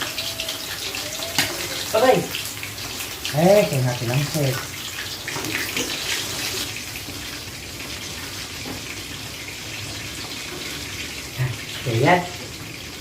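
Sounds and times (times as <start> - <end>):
chicken frying in hot oil: 0.0 - 13.0.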